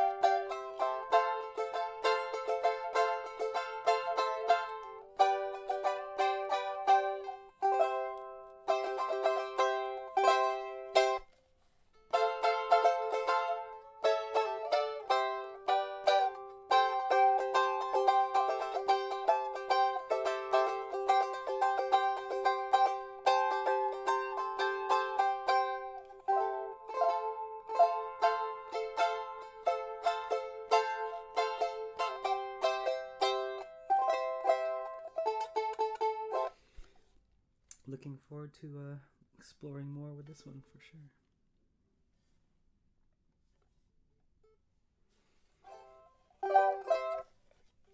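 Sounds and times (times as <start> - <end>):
ukulele strummed and picked: 0.0 - 39.5, 44.4 - 47.9.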